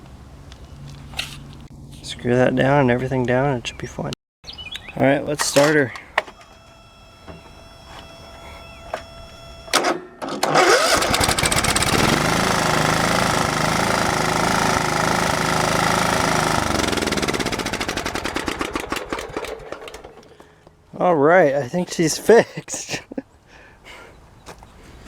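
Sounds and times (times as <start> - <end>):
mower engine cranking and running: 5.4 - 20.7.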